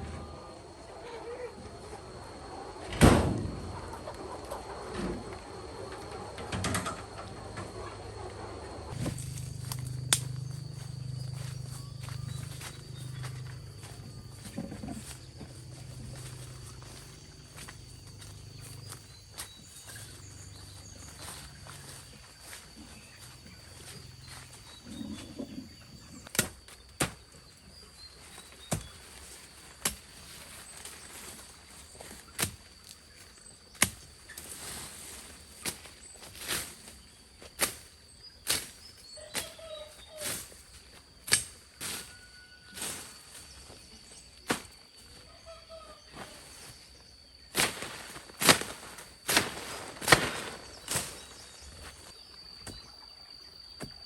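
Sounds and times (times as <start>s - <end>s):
high-pitched drone: 8.7s - 19.1s.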